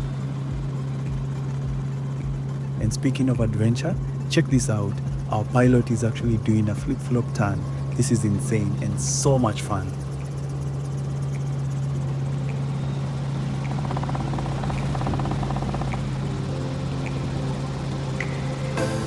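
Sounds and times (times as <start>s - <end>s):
helicopter engine and rotor drone: 0.0s - 19.0s.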